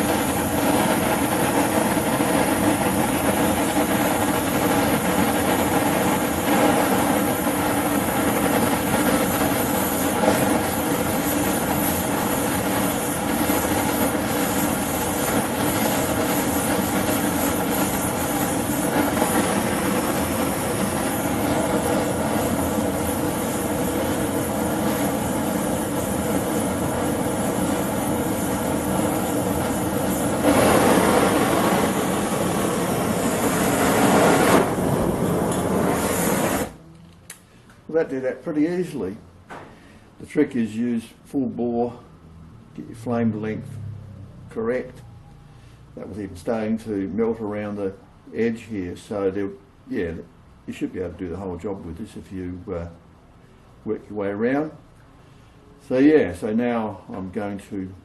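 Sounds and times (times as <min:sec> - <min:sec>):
propane torch flame rushing: 0:00.0 - 0:39.0.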